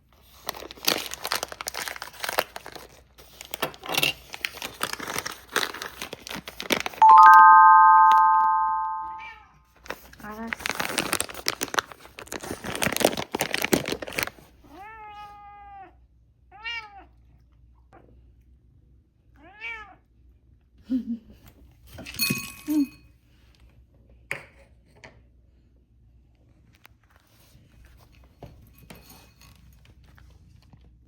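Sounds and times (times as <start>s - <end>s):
cat meowing: 16.5s - 17.1s, 19.4s - 20.0s.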